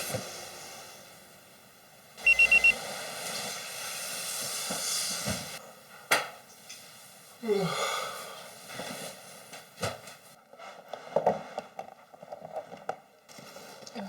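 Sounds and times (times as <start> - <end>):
high electronic beeps: 2.2 - 2.8.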